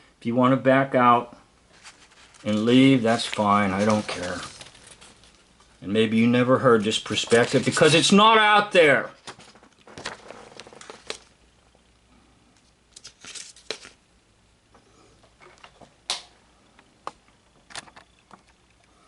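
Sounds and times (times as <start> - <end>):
faint clicks and rustles: 1.7 - 5.8, 9.2 - 11.4.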